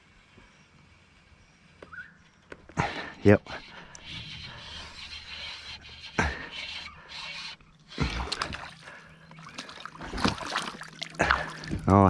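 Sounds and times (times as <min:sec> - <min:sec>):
water splashing from fish: 0:08.0 - 0:12.0.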